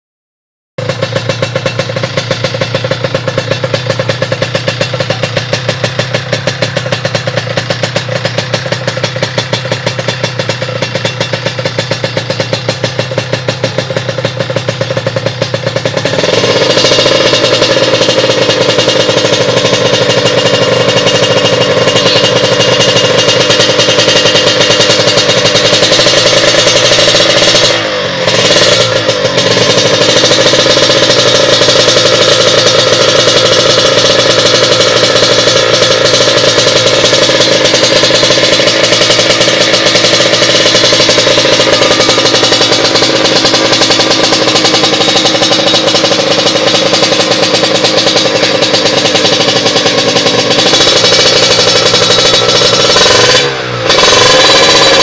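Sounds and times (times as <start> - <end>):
motorcycle engine revving: 0.8 - 55.0.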